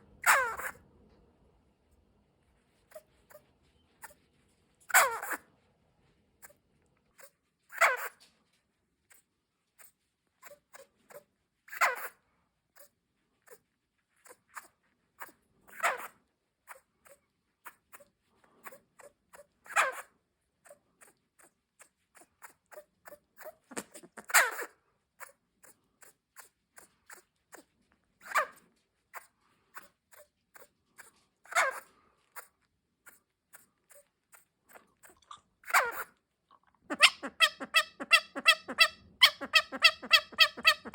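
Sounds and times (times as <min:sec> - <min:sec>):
bushbaby calling: 0:36.9 - 0:40.9.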